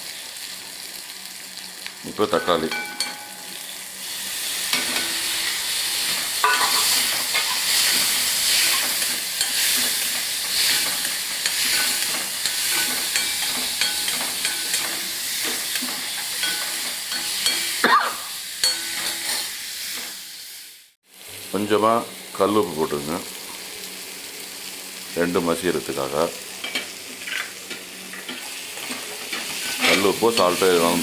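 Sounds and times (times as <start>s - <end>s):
onions frying in oil: 0.0s - 31.0s
spoon scraping a pan: 4.6s - 20.1s, 26.6s - 31.0s.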